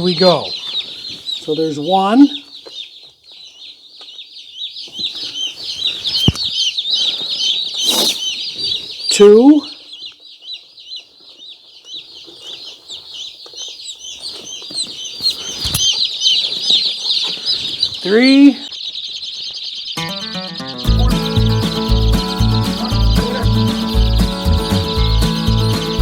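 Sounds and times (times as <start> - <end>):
chicks peeping: 0.0 - 26.0
music with heavy beat: 20.0 - 26.0.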